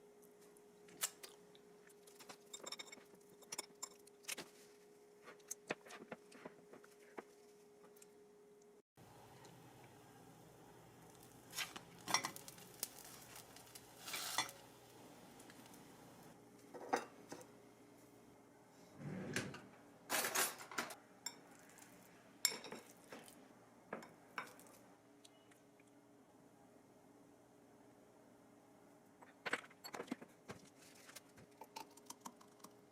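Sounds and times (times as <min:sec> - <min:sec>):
dishes and utensils clinking: 0:02.1 - 0:04.1, 0:12.0 - 0:13.1, 0:16.7 - 0:17.5, 0:20.1 - 0:21.5, 0:22.4 - 0:23.1.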